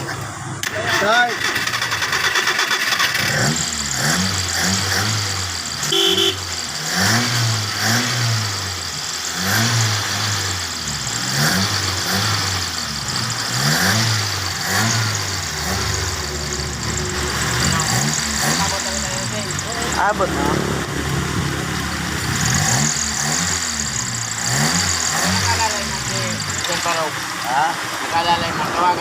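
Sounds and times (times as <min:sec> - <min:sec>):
car engine running unevenly: 0:00.0 - 0:29.0
short beep: 0:05.9 - 0:06.4.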